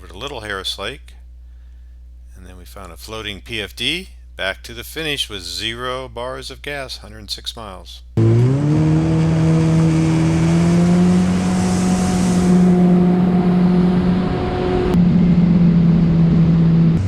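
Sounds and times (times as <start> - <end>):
watercraft engine: 8.2 - 17.0.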